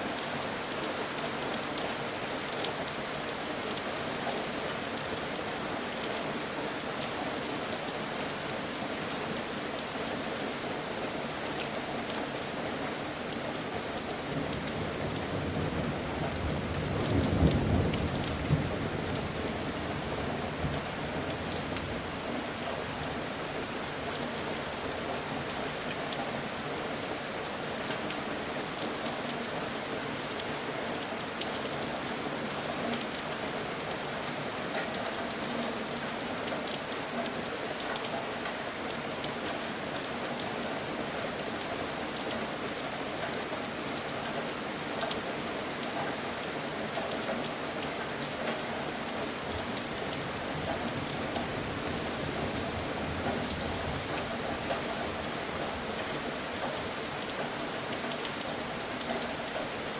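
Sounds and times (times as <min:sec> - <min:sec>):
steady rain: 0:00.0 - 0:59.9
low rumble of thunder: 0:15.1 - 0:20.0.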